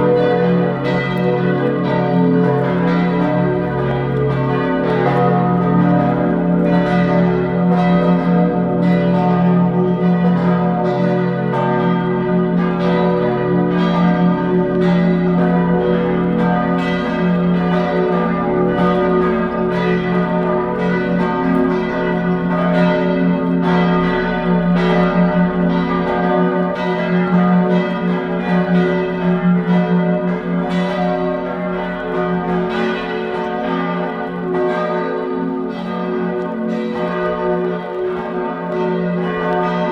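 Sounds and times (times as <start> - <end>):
church bells pealing: 0.0 - 39.9.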